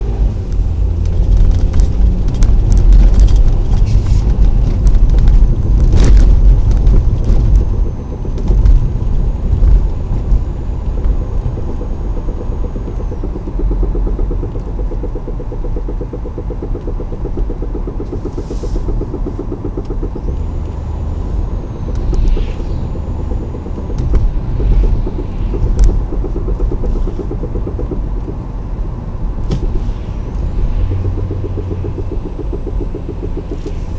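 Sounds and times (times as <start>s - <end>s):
road and tyre rumble: 0.0s - 33.9s
fast even knocking: 9.7s - 22.4s, 23.0s - 28.6s, 29.3s - 33.9s.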